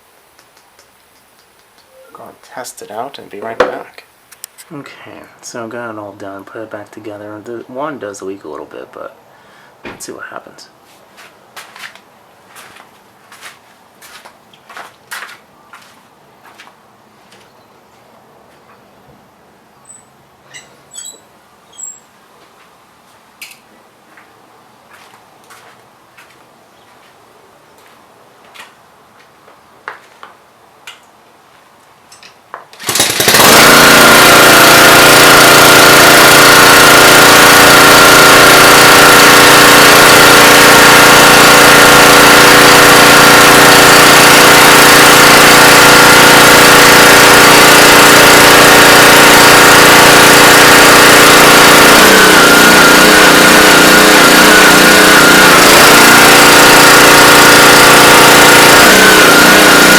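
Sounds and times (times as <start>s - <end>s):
pressure washer running: 32.8s - 59.9s.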